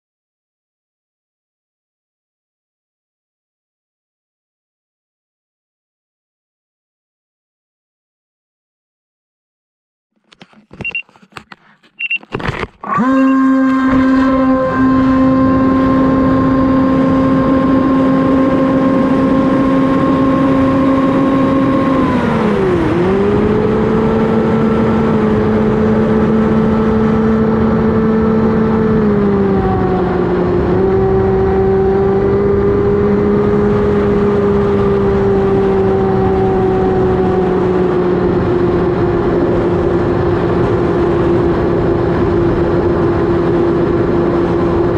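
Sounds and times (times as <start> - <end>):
electric motor and propeller humming: 10.2 - 44.9
short beeps: 10.8 - 11.1, 12.0 - 12.3.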